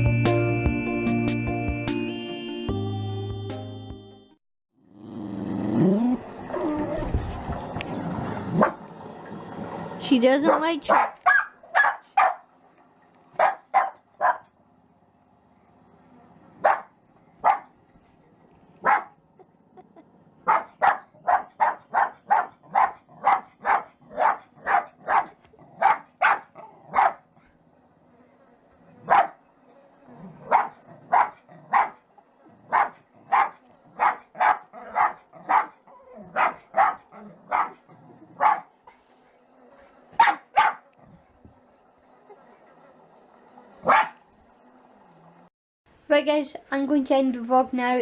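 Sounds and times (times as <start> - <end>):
dog barking: 10.4 - 12.5, 13.4 - 14.5, 16.6 - 17.8, 18.8 - 19.2, 20.4 - 27.3, 29.0 - 29.4, 30.4 - 32.0, 32.6 - 37.8, 38.4 - 38.8, 40.1 - 40.9, 43.8 - 44.2.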